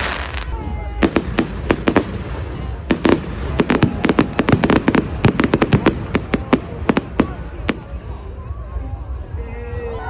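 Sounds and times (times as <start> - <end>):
fireworks bangs and crackles: 0.0 - 8.6.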